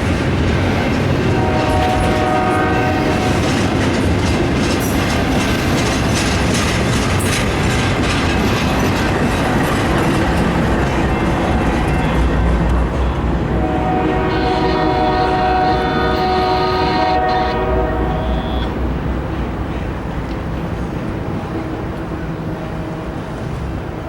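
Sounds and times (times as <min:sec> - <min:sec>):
freight train wheels rumbling: 0:00.0 - 0:24.0
train horn chord: 0:01.2 - 0:03.7, 0:11.5 - 0:18.9.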